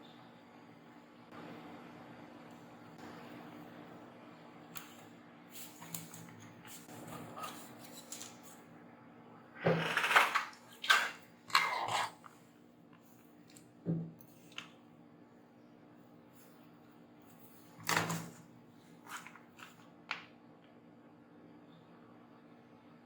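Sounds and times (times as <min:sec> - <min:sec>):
faint steady hum: 0:00.0 - 0:23.0
scratchy handling sounds: 0:05.6 - 0:08.6, 0:17.3 - 0:19.9.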